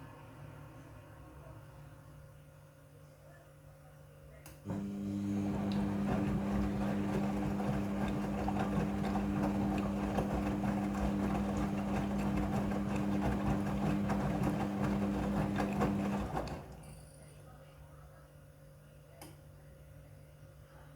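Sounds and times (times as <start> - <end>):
washing machine humming and whirring: 4.6 - 18.6.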